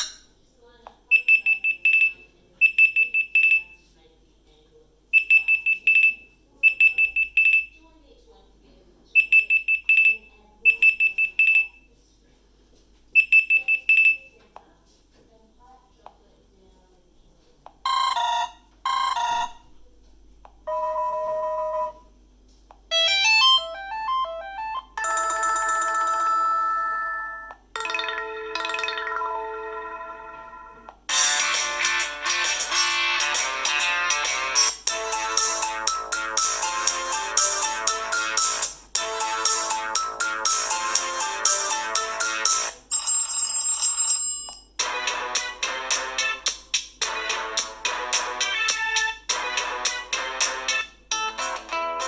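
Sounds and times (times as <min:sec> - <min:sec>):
electronic ringtone beeping: 0:22.9 - 0:44.2.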